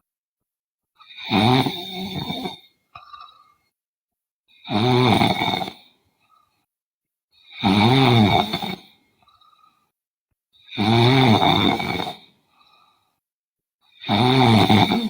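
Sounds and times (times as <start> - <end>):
woman snoring: 1.0 - 3.4, 4.6 - 5.9, 7.5 - 9.5, 10.7 - 12.3, 14.0 - 15.0.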